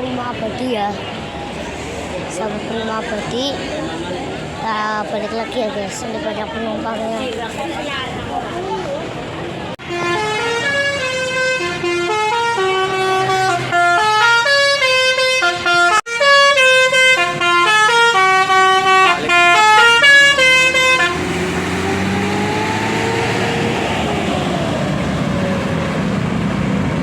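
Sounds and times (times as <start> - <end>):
bus engine noise: 0.0 - 27.0
musical bus horn playing tune: 9.8 - 22.2.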